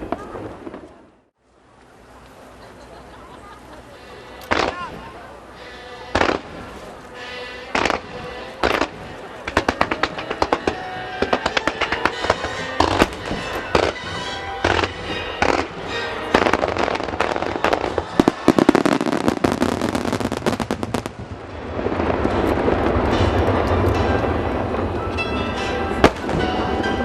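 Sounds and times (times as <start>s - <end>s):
fireworks cracking and popping: 4.4s - 5.1s, 6.1s - 7.0s, 7.7s - 25.2s
music: 5.6s - 19.0s, 22.2s - 27.0s.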